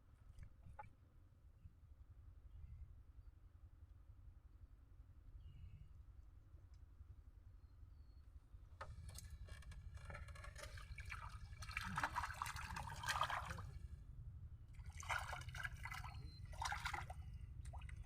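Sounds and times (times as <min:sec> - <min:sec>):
water splashing and trickling: 0:08.9 - 0:13.9, 0:14.8 - 0:18.0
steady low rumble: 0:12.8 - 0:18.0.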